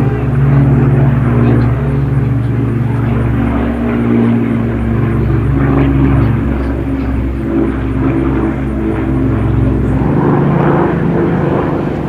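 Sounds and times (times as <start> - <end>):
propeller plane engine drone: 0.0 - 12.0.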